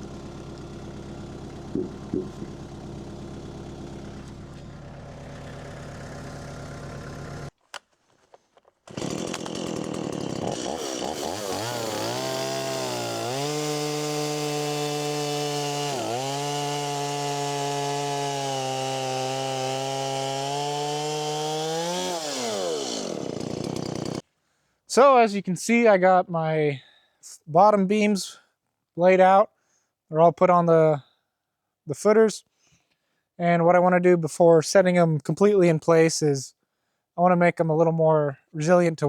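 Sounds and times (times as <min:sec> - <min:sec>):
chainsaw cutting timber: 0:00.0 - 0:07.5, 0:08.8 - 0:24.2
small engine running: 0:00.0 - 0:07.5, 0:08.9 - 0:24.2.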